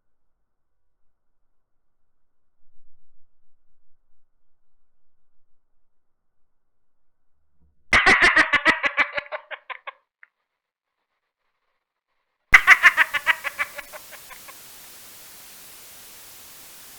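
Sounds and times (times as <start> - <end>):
woman laughing: 8.0 - 9.9, 12.6 - 14.6.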